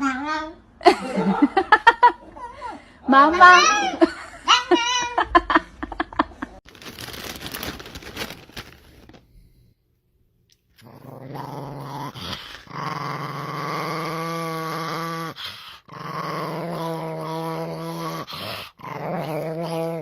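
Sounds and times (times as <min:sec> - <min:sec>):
dog growling: 0:10.8 - 0:20.0.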